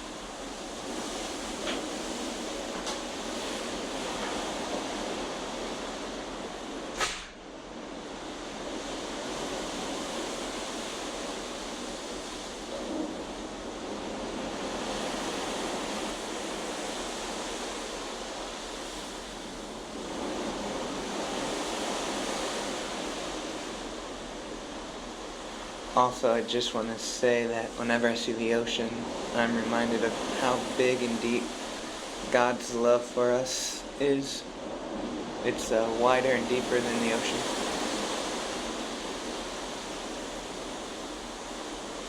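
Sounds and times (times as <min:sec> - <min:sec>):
ocean waves washing: 0:00.0 - 0:42.0
sharp click: 0:07.0 - 0:07.4.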